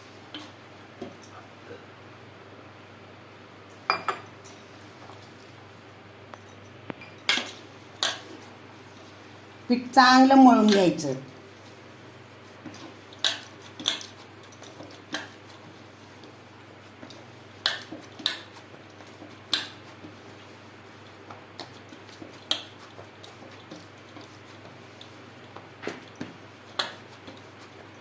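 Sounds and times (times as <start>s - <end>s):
hands and dough tapping a dish: 17.0s - 20.2s, 25.5s - 27.4s.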